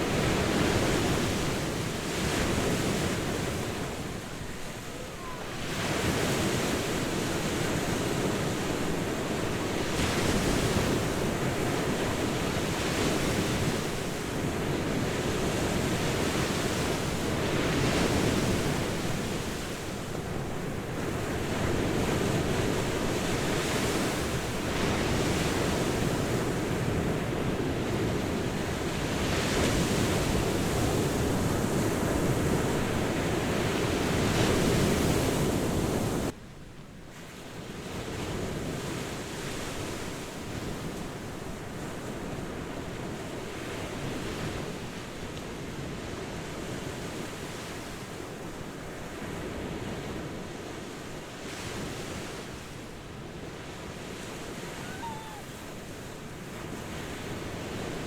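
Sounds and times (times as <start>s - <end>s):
ocean surf washing onto beach: 0.0s - 36.4s, 37.5s - 58.0s
wind on microphone: 51.5s - 58.0s.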